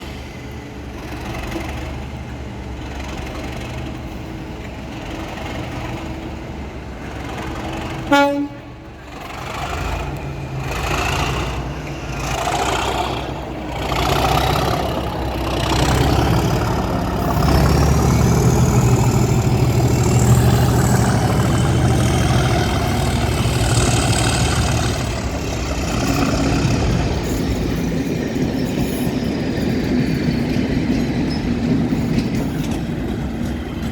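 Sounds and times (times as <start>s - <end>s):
diesel locomotive engines: 0.0s - 33.9s
train horn: 8.0s - 8.9s.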